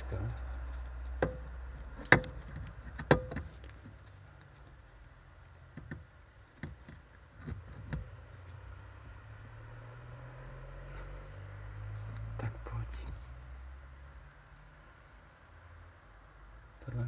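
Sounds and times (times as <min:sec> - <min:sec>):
sharp knocks and clicks: 0:01.0 - 0:03.7, 0:05.7 - 0:08.2.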